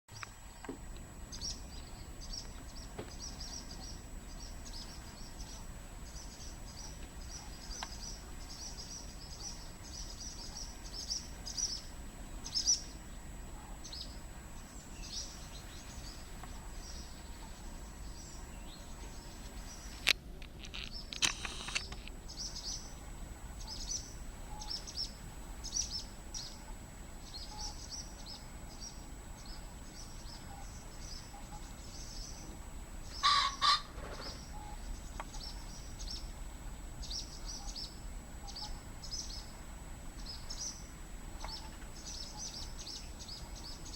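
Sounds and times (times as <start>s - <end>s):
songbirds chirping: 0.1s - 43.9s
pheasant crowing: 33.1s - 34.8s
pheasant wing-beats whirring: 33.2s - 34.6s.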